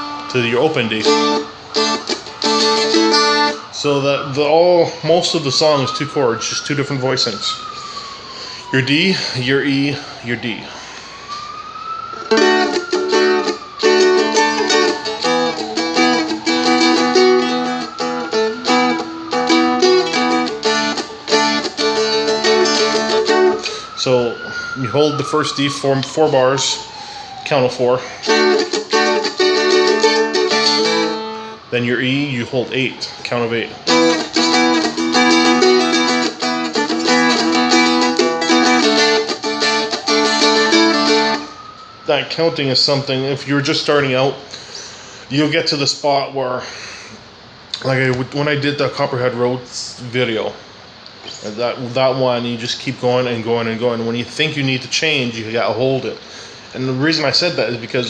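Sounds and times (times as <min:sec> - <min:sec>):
strumstick strummed chords: 0:00.0 - 0:03.6, 0:12.3 - 0:23.6, 0:28.3 - 0:31.5, 0:33.9 - 0:41.4.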